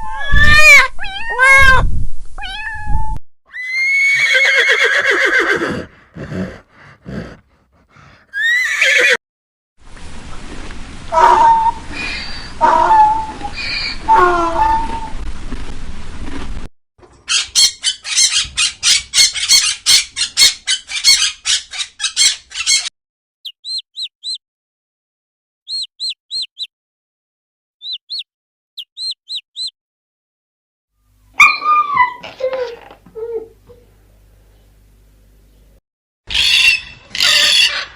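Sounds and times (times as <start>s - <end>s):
harsh bird squawks: 11.1s - 15.1s, 17.3s - 22.9s, 25.7s - 26.7s, 27.8s - 28.2s, 28.9s - 29.7s, 36.3s - 37.9s
high bird chirps: 23.5s - 24.4s, 25.7s - 26.7s, 27.8s - 29.8s.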